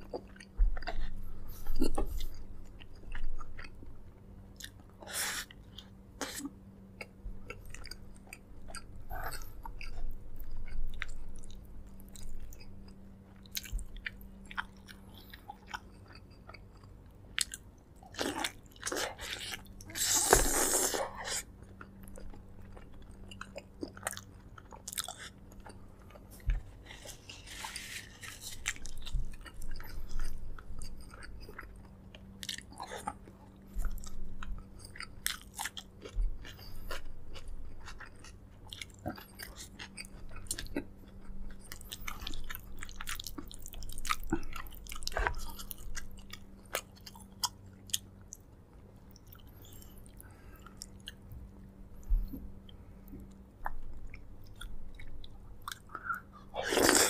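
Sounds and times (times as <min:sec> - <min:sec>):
person chewing and biting: 0:13.4 - 0:48.1, 0:53.6 - 0:57.0.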